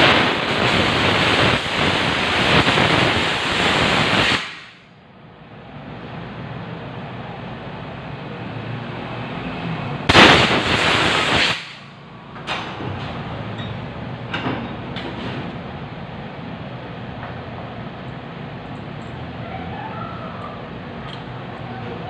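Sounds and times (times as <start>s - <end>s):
loud hiss of spray: 0.0s - 4.8s, 10.1s - 11.9s.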